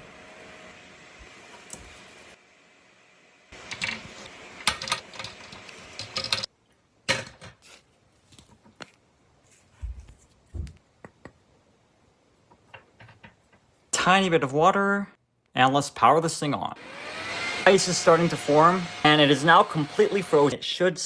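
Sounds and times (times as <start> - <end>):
objects knocking and tapping: 10.6 - 11.5, 12.4 - 13.7.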